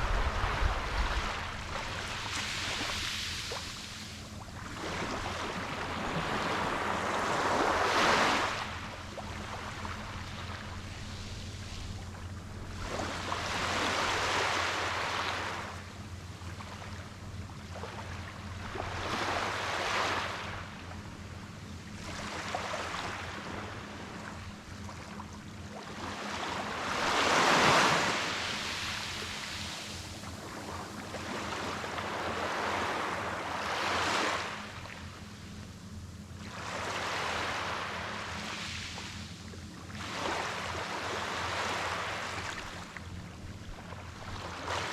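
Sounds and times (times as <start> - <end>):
faint low hum: 0.0 - 7.8
small waves breaking on a beach: 0.0 - 44.9.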